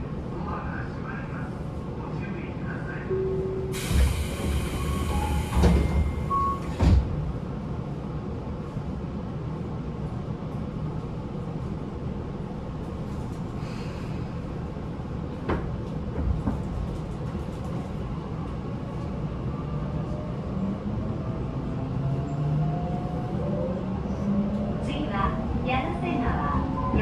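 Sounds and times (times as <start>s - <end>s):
train car rumble: 0.0s - 27.0s.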